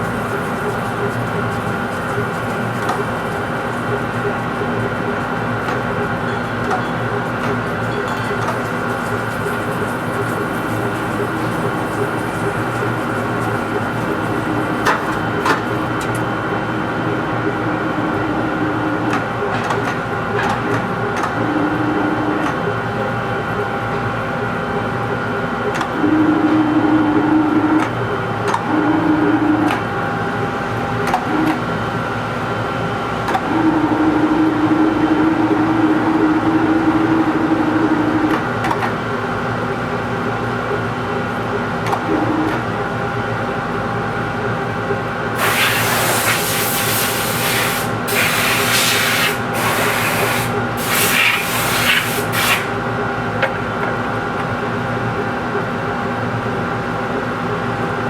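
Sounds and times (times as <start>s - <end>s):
loud hissing bursts: 45.4s - 52.8s.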